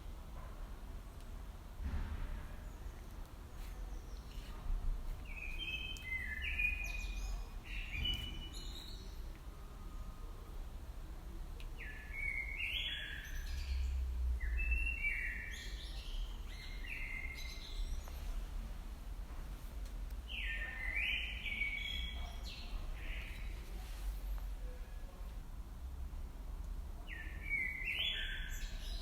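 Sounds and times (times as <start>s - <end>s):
songbird singing: 2.7s - 10.6s, 11.2s - 18.7s, 20.0s - 25.2s, 27.0s - 29.0s.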